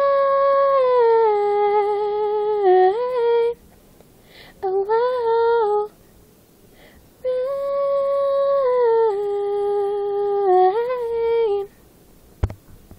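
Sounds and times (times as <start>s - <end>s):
woman singing without words: 0.0s - 3.6s, 4.5s - 6.0s, 7.2s - 11.8s.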